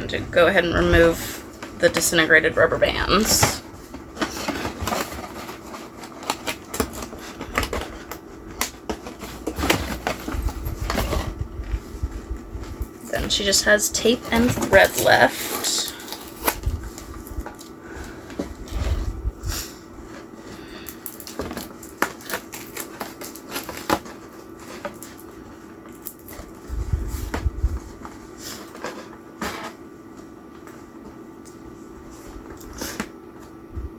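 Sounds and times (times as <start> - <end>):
plastic packaging crackling: 3.0 - 19.2, 20.8 - 29.7.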